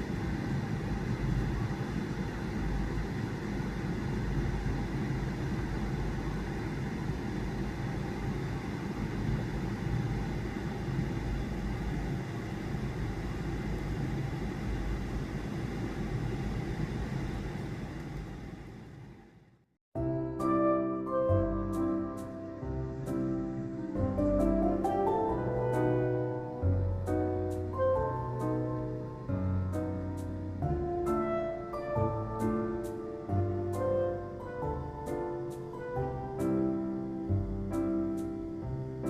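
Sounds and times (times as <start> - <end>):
low rumbling background noise: 0.0 - 39.0.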